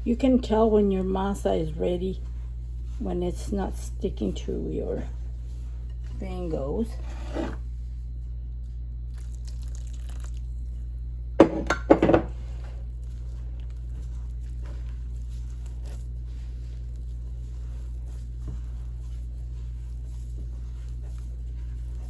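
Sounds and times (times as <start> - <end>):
low hum: 0.0 - 22.0
hands squishing dough: 12.3 - 22.0.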